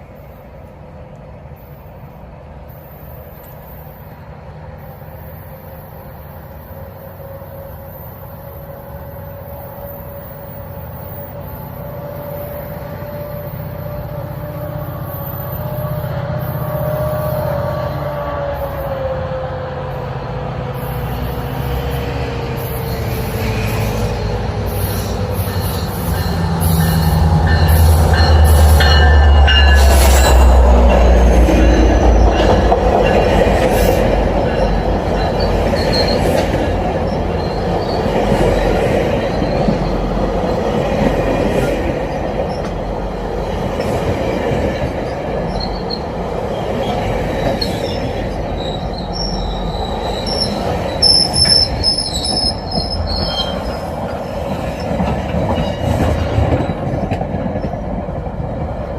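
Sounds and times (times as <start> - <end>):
train rolling by: 0.0 - 58.9
high-pitched wheel squeal: 47.4 - 53.9.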